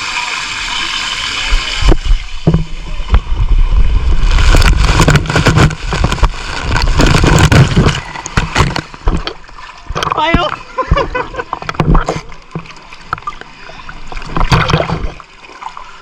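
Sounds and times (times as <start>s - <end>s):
water rushing and splashing: 0.0s - 16.0s
camera knocks and rumble: 1.9s - 3.3s, 4.5s - 12.7s.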